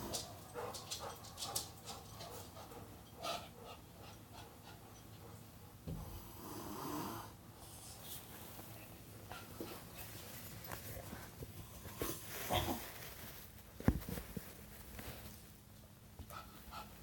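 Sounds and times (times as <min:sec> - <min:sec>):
low snoring breath: 0:06.0 - 0:07.4.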